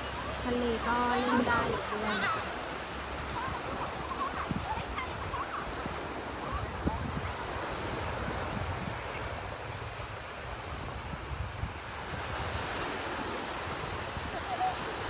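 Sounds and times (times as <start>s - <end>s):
faint voices: 0.0s - 7.7s
sea waves washing onto sand: 0.0s - 15.0s
wind rumbling on microphone: 0.0s - 15.0s.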